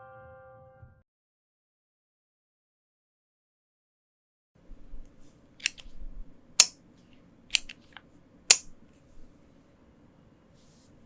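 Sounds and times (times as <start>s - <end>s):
mechanical keyboard keystrokes: 5.6s - 5.8s, 7.6s - 7.8s.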